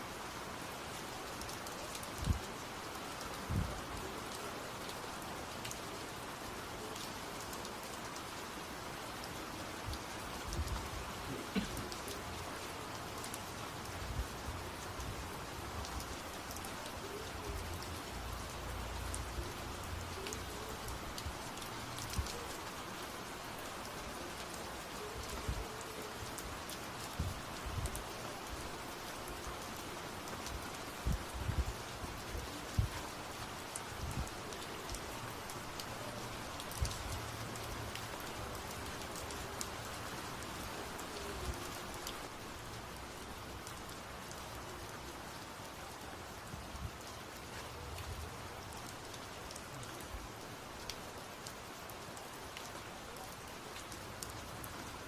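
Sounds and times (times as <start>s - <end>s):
steady rain: 0.0s - 55.0s.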